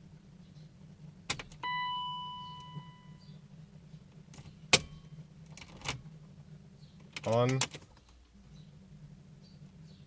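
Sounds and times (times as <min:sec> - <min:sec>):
electronic chime: 0:01.6 - 0:03.2.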